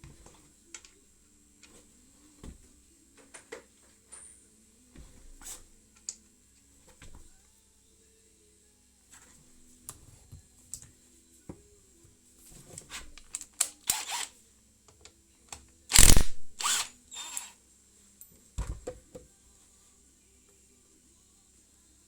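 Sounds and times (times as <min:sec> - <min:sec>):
metallic clicks: 0:15.9 - 0:17.4.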